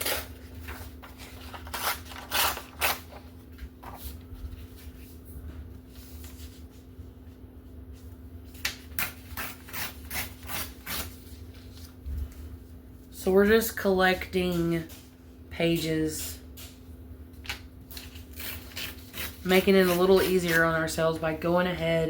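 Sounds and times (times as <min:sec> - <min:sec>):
book pages rustling and tearing: 0:00.0 - 0:07.0, 0:08.1 - 0:12.6, 0:17.4 - 0:20.8.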